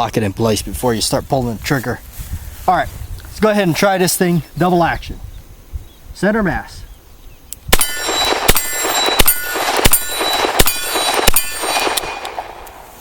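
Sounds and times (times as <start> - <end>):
revolver shots with ringing tail: 7.8 - 12.6.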